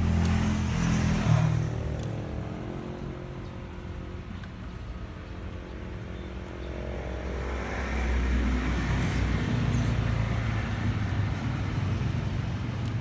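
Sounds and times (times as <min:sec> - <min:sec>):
vehicle engine running: 0:00.0 - 0:06.3.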